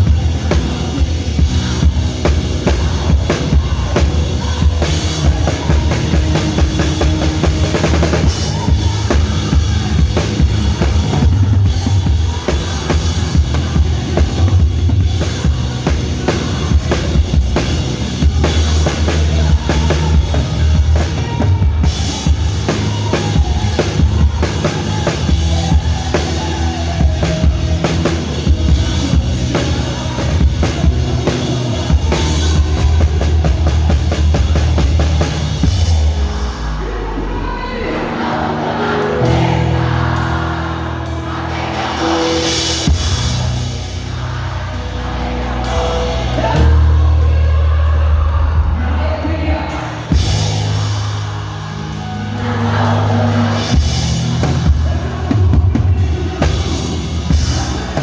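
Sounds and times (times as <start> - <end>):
bass drum and snare beat: 0.0 - 36.2
worship band playing: 0.0 - 58.0.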